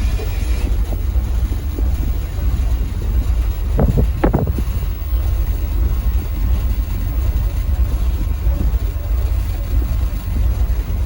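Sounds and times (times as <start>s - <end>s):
boat engine running: 0.0s - 11.0s
wind noise on microphone: 0.5s - 6.8s.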